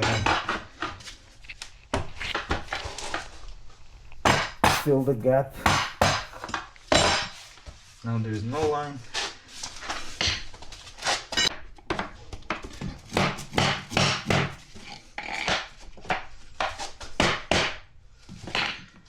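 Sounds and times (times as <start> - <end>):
flooring planks being hammered: 4.2 - 7.4, 11.9 - 14.6, 16.6 - 18.9.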